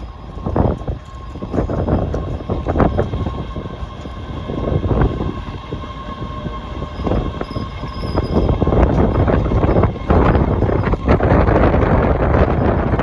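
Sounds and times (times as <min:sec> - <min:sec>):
clacks and rattles: 0:00.0 - 0:05.8
faint steady whine: 0:00.0 - 0:13.0
train rumbling on rails: 0:00.0 - 0:13.0.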